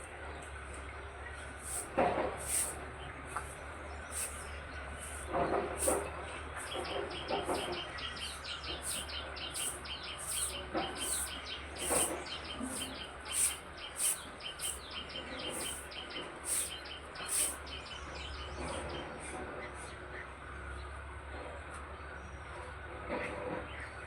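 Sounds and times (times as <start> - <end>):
songbirds chirping: 0.0 - 24.0.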